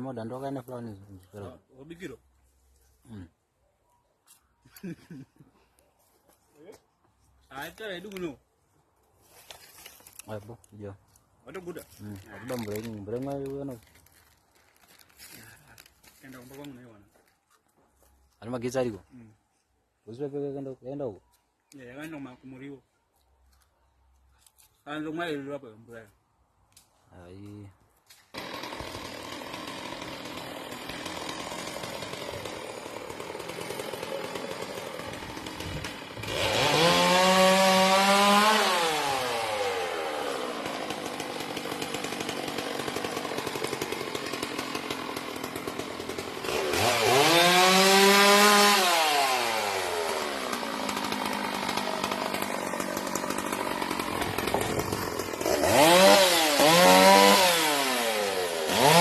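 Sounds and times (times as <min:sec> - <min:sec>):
chainsaw idling and revving: 0:11.5 - 0:16.8, 0:28.1 - 0:59.0.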